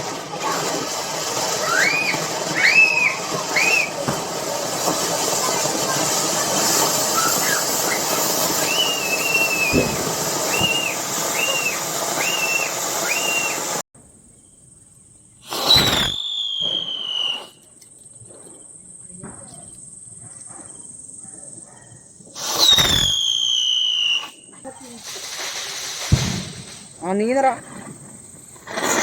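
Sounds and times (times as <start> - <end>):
firecracker bang: 0.0 - 13.8, 25.0 - 27.0
fireworks hissing and chirping: 0.0 - 13.9, 15.4 - 19.2, 22.2 - 29.0
falling whistle: 1.5 - 4.1, 7.0 - 13.8, 15.5 - 17.6, 22.4 - 24.6
faint pops: 8.5 - 11.6.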